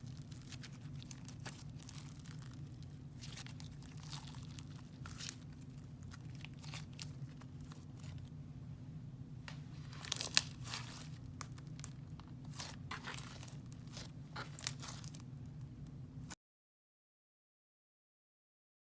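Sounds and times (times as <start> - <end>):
slime crackling and popping: 0.0 - 8.3, 10.0 - 15.7.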